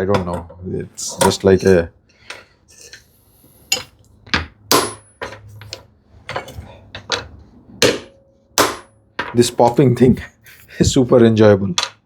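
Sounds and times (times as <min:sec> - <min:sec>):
sharp knocks on wood ringing: 0:03.8 - 0:05.5, 0:07.8 - 0:09.4.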